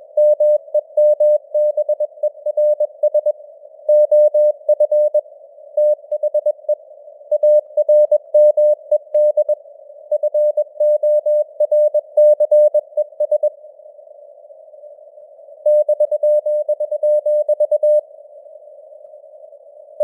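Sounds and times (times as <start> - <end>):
morse code beeps: 7.3 - 9.6, 10.2 - 13.5, 15.7 - 18.0.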